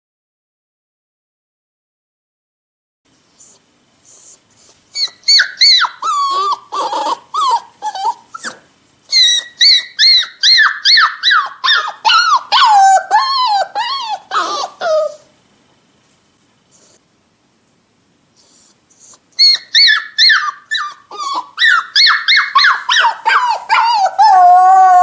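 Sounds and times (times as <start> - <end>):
puppy whimpering and whining: 3.3 - 15.3, 16.7 - 17.0, 18.4 - 25.0.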